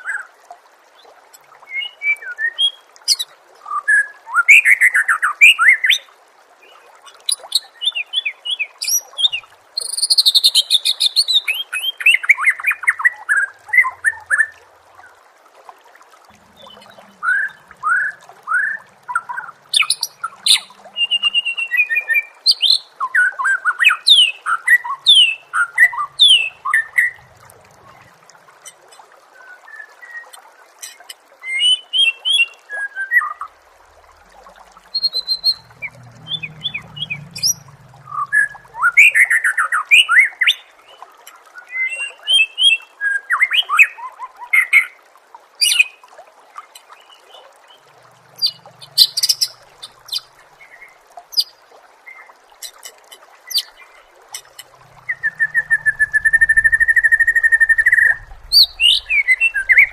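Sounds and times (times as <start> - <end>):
bird singing whistles and trills: 1.7 - 5.8, 16.6 - 27.2, 34.9 - 40.6, 55.0 - 59.9.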